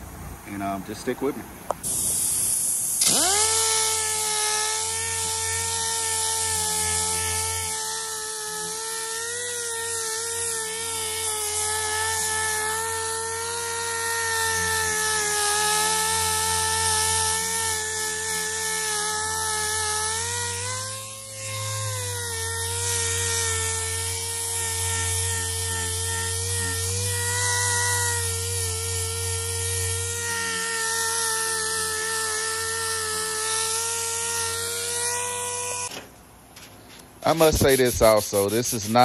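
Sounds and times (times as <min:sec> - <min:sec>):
power sander whining: 0:02.9 - 0:36.0.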